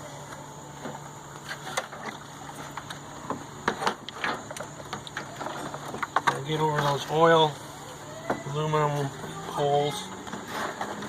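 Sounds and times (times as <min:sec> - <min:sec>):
steady low hum: 0:00.0 - 0:11.0
light knocks and clicks of parts: 0:00.3 - 0:07.2.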